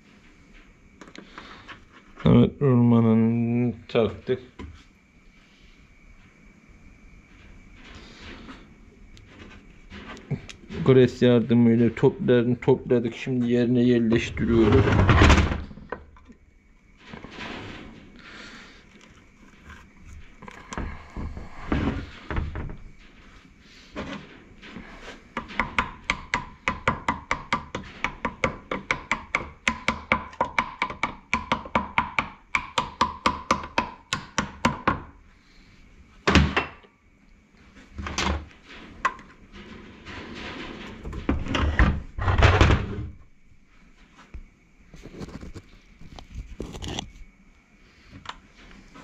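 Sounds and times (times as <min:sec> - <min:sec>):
handling noise: 0:37.8 - 0:47.4.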